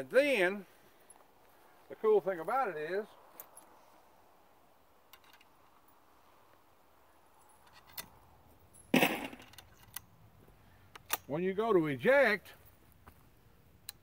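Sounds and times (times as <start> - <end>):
loud metal clack: 8.9 - 9.6.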